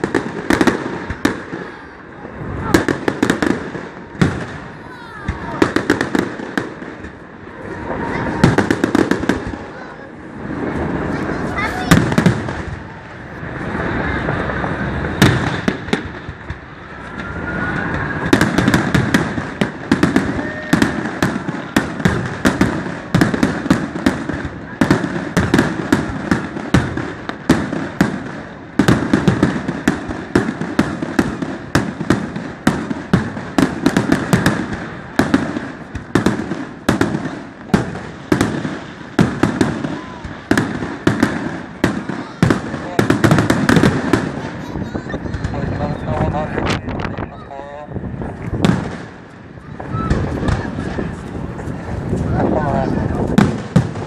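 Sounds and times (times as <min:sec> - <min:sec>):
firework cracks and bangs: 0:00.0 - 0:54.0
fireworks booming: 0:00.0 - 0:54.0
rising firework whistle: 0:10.3 - 0:24.0, 0:25.3 - 0:54.0.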